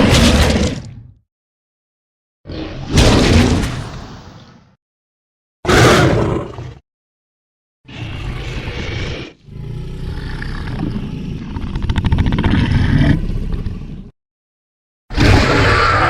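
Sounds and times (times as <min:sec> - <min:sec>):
monster roar: 0:07.9 - 0:13.4, 0:15.1 - 0:16.0
monster growling: 0:07.9 - 0:13.6.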